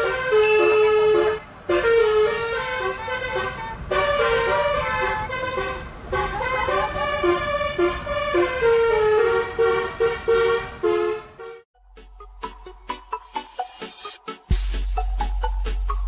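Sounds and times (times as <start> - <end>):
multi-tone bus air horn melody: 0.0 - 11.8.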